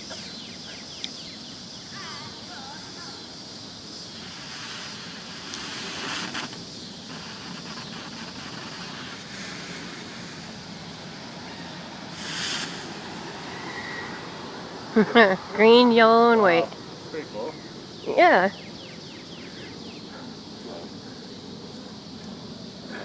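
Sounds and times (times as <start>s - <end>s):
smoke bomb hissing: 1.9s - 17.0s.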